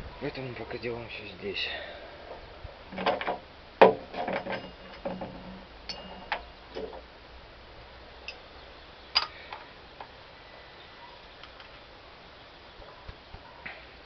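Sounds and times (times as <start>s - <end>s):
metal tools clicking and clinking: 4.1s - 7.0s.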